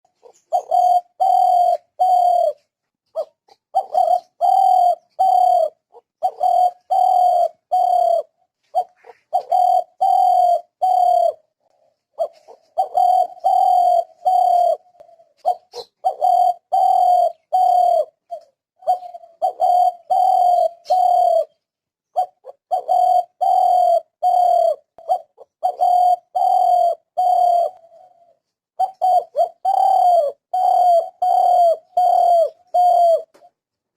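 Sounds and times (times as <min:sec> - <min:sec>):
dove cooing: 0:00.0 - 0:33.8.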